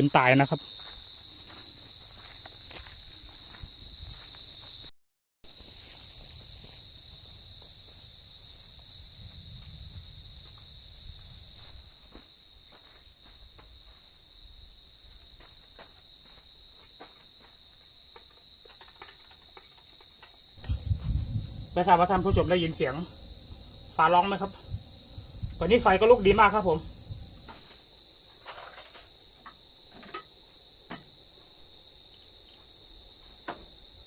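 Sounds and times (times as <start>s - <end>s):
crickets and insects trilling: 0.0s - 4.9s, 5.5s - 34.0s
low rumble: 20.6s - 27.6s.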